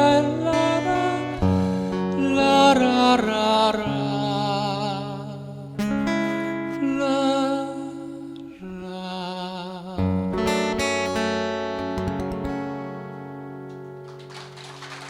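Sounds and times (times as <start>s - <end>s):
person singing with vibrato: 0.0s - 10.7s
acoustic guitar strumming: 0.0s - 15.0s.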